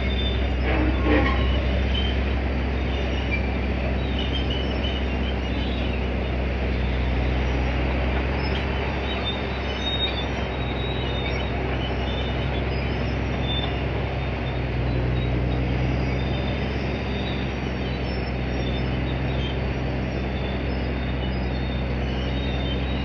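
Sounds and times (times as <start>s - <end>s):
faint high squeaks: 0.0s - 2.2s
diesel engine running under load: 0.0s - 23.0s.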